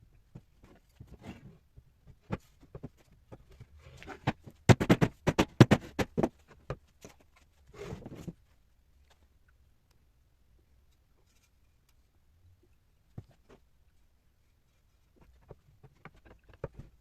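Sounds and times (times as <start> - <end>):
wooden parts knocking and clicking: 2.1 - 7.4, 15.2 - 17.0.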